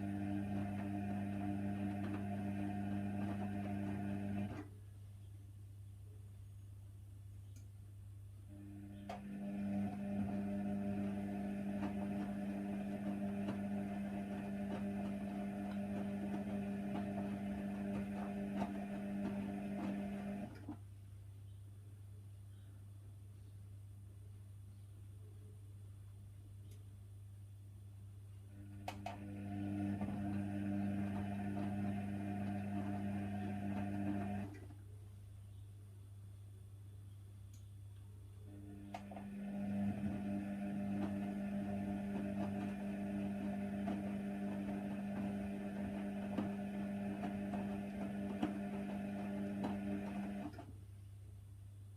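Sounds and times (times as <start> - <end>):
washer dryer motor humming: 0.0 - 4.7, 8.5 - 20.8, 28.5 - 34.8, 38.5 - 50.8
small click: 7.5 - 7.7.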